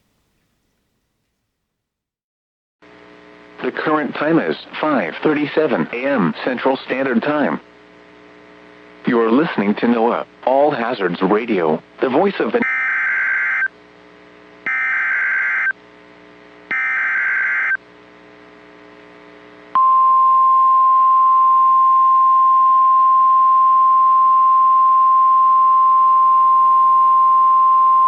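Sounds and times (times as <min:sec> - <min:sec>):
steady warning alarm tone: 0:12.6 - 0:13.7, 0:14.7 - 0:15.8, 0:16.7 - 0:17.8.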